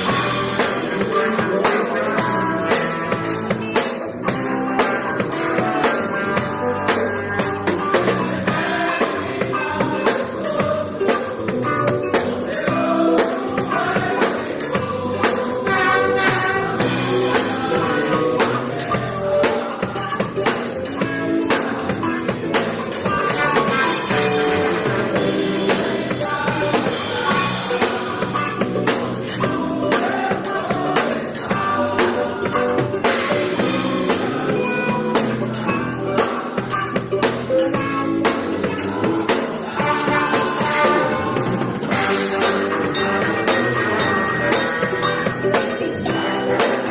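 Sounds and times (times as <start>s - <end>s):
drum kit: 0.0s - 46.9s
gospel band playing: 0.0s - 46.9s
tambourine: 0.0s - 46.9s
voices singing: 0.0s - 46.9s.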